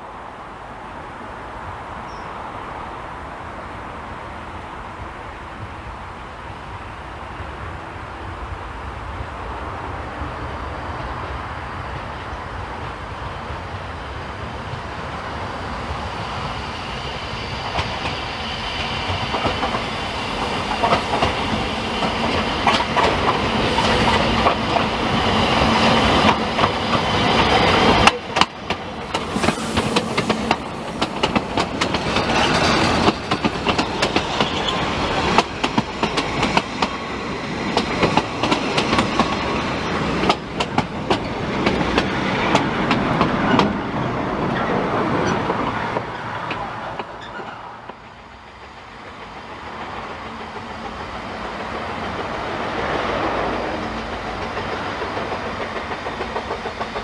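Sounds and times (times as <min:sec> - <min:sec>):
train wheels clicking over rail joints: 0:17.6 - 0:57.0.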